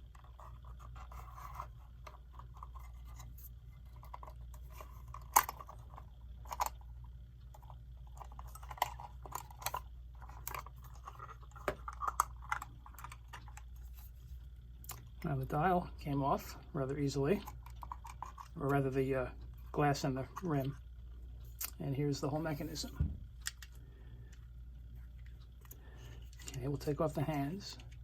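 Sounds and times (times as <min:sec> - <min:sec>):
small clicks and scrapes: 0:00.0 - 0:15.1, 0:17.4 - 0:18.6, 0:22.6 - 0:28.0.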